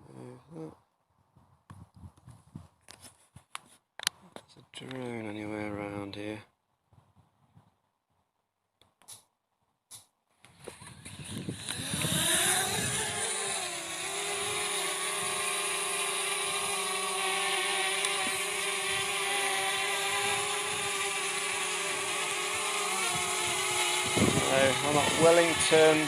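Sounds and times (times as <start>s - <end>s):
drone propeller whine: 10.7s - 26.0s.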